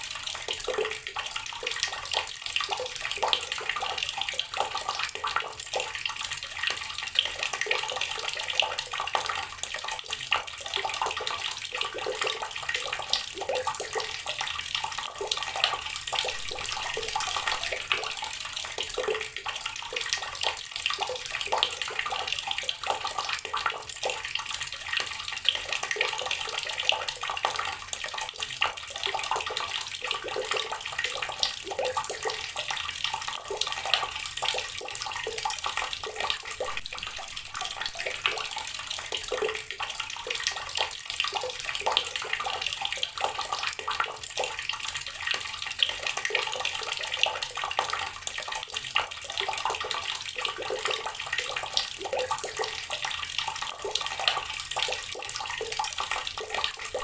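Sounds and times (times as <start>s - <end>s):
water pouring onto rocks: 15.2s - 20.4s.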